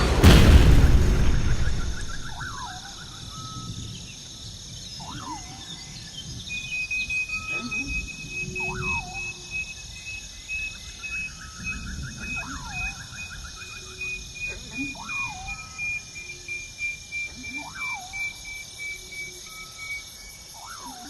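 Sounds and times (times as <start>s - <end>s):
low rumble: 0.0s - 3.4s
high insect tone: 0.3s - 21.0s
insect chirring: 1.2s - 21.0s.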